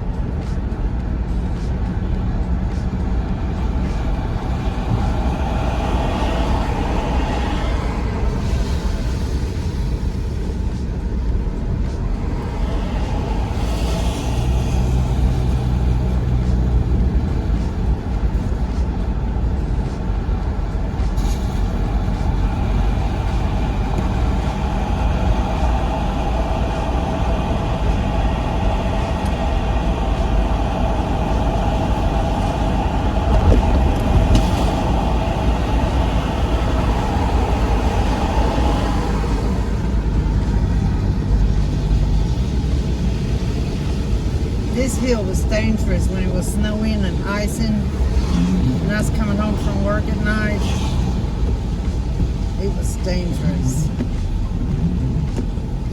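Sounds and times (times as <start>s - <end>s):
car cabin road noise: 0.0s - 55.9s
tyre hum: 47.8s - 49.1s, 50.6s - 55.9s.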